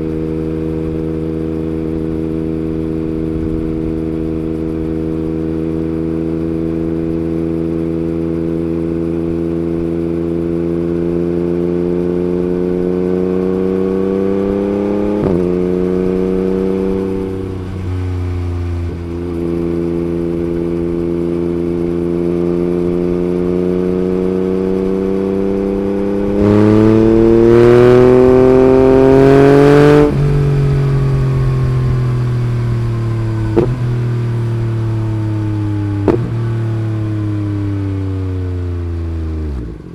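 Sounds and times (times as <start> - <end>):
motorcycle engine revving: 0.0 - 39.9
exhaust pops: 30.0 - 35.3, 36.0 - 37.8.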